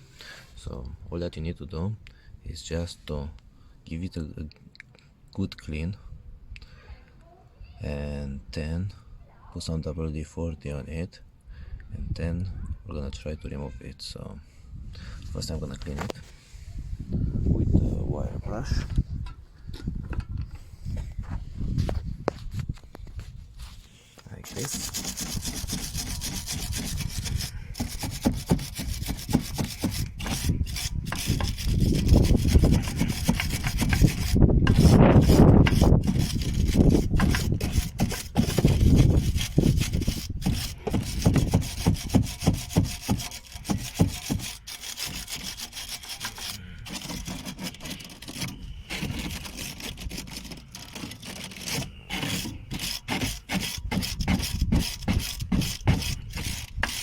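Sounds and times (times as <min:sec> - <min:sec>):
wire brush scrubbing metal: 0:24.4 - 0:57.0.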